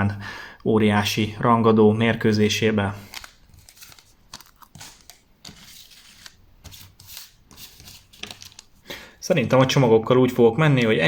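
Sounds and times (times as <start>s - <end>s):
foil card wrappers crinkling: 3.0s - 9.0s.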